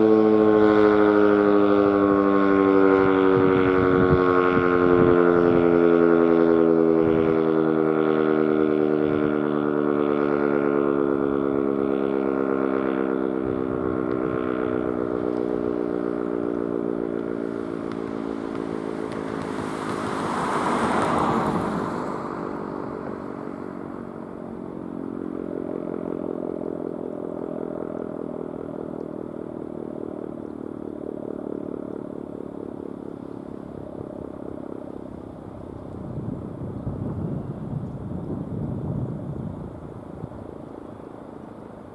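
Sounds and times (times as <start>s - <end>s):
warning siren winding down: 0.0s - 12.5s.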